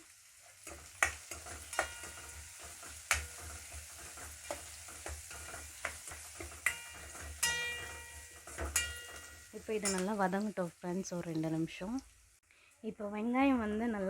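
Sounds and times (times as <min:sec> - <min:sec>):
food sizzling in oil: 0:00.0 - 0:14.0
spatula knocking against pan: 0:00.7 - 0:10.0.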